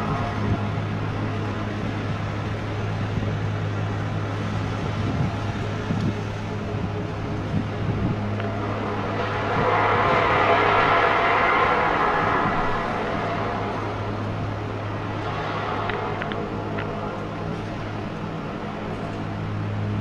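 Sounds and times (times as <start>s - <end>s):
low droning hum: 0.0s - 20.0s
hiss: 8.2s - 17.2s.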